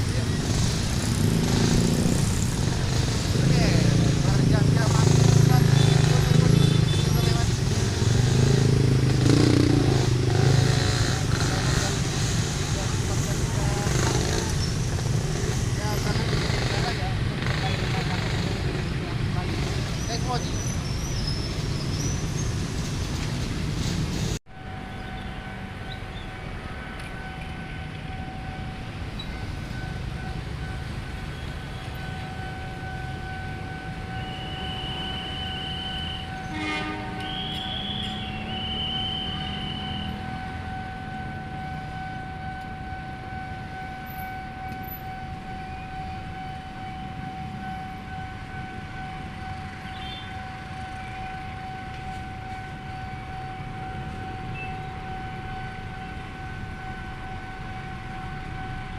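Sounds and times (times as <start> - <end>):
low rumble of train: 0.0 - 58.9
train horn blowing: 5.6 - 14.5, 34.0 - 45.2, 47.9 - 52.7
level crossing alarm tone: 24.5 - 58.9.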